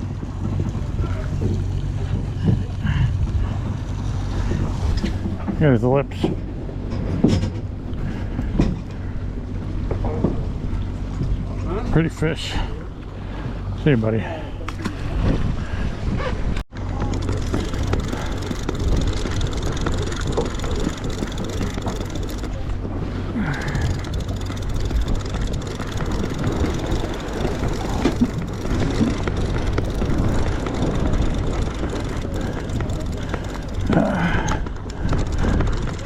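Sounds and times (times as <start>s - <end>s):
boat engine humming: 0.0s - 15.6s, 16.8s - 36.0s
wind: 0.0s - 36.0s
sea noise: 7.6s - 36.0s.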